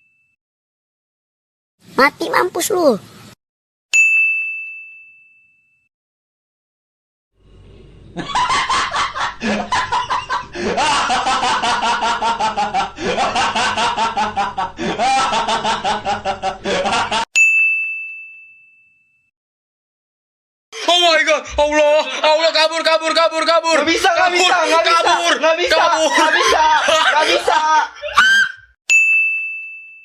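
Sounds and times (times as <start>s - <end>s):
bell ding: 0.0s - 0.4s, 4.0s - 5.9s, 17.4s - 19.3s, 28.9s - 30.0s
person laughing loudly: 8.2s - 17.3s, 20.8s - 28.7s.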